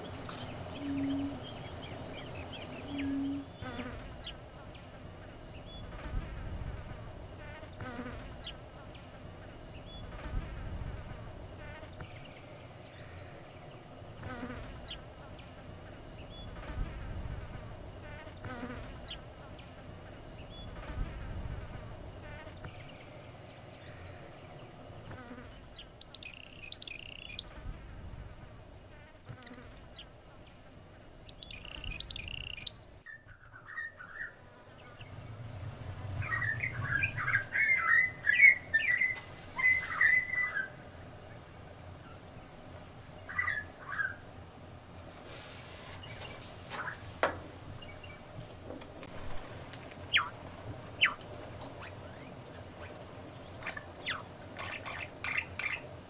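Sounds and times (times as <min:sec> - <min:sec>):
low wind rumble: 0:00.0 - 0:07.5, 0:08.2 - 0:18.2, 0:18.8 - 0:26.1, 0:27.2 - 0:28.9, 0:34.3 - 0:45.3, 0:45.9 - 0:56.0
flies buzzing: 0:00.0 - 0:13.4, 0:14.0 - 0:23.2, 0:24.1 - 0:30.8, 0:45.0 - 0:56.0.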